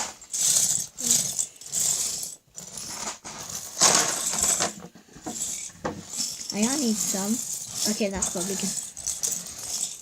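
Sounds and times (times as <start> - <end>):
plastic bricks clattering: 0.0 - 10.0.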